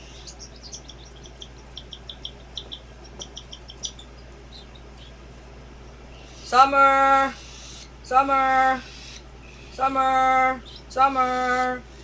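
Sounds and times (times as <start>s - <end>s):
cockatiel chick squeaky chirps: 0.0s - 5.2s, 7.4s - 7.9s.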